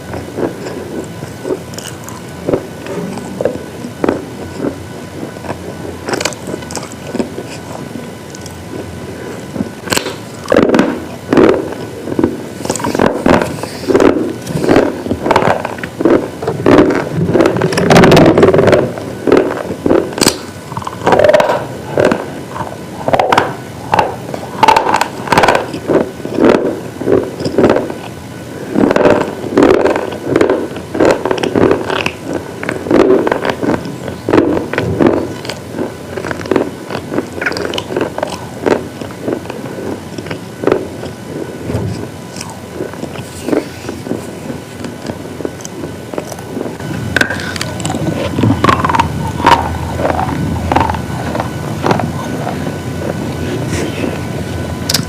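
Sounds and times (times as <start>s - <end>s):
crunchy food chewing: 0.0s - 54.2s.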